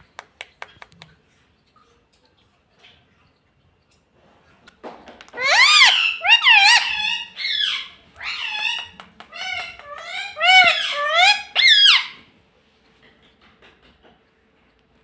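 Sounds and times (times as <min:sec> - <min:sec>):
parakeet calling: 0:05.4 - 0:12.2.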